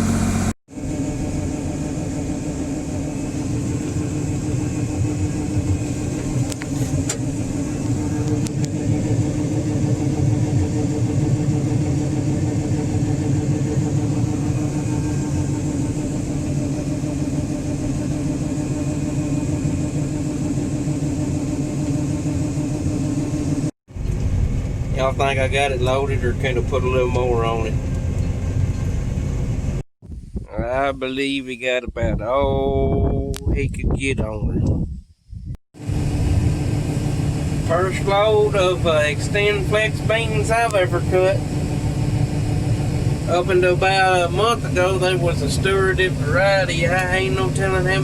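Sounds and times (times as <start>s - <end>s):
farm machinery engine humming: 0.0s - 29.8s, 35.8s - 48.0s.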